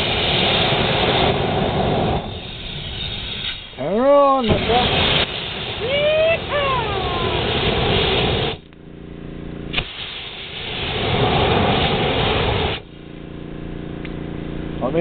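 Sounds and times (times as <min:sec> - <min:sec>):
short falling squeal: 0:02.3 - 0:03.7
compressor engine running: 0:03.7 - 0:15.0
compressed air hose hissing: 0:09.7 - 0:13.0.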